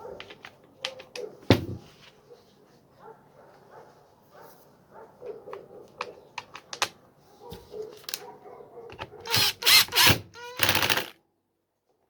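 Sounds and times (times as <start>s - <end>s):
faint clicks and handling: 5.3s - 9.4s.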